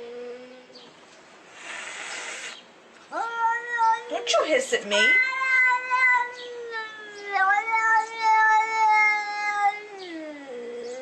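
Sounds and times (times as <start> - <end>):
cat yowling: 2.4 - 11.0.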